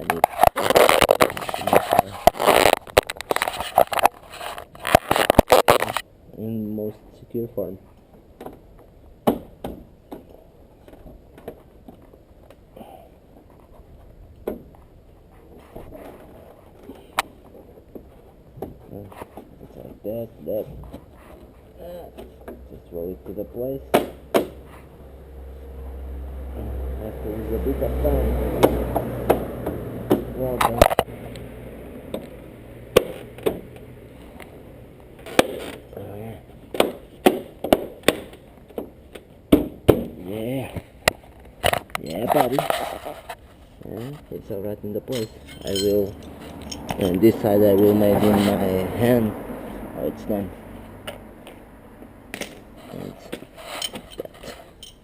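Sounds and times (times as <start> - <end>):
knocks and clicks of car parts: 8.4 - 12.0, 23.3 - 24.6, 28.5 - 31.1, 32.9 - 33.8, 36.7 - 40.2.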